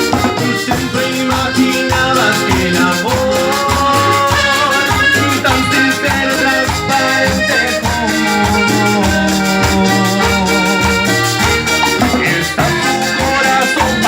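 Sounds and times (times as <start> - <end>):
live band playing: 0.0 - 14.0.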